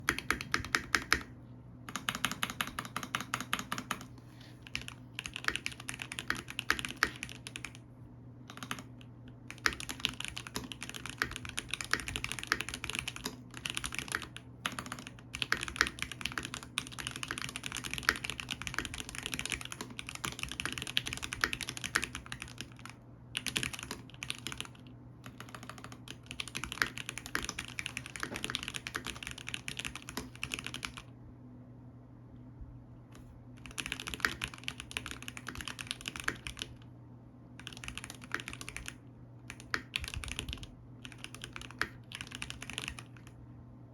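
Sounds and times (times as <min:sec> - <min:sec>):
fast typing on mechanical keyboard: 0:00.0 - 0:01.3, 0:01.9 - 0:07.9, 0:08.5 - 0:31.1, 0:33.6 - 0:36.8, 0:37.6 - 0:43.4.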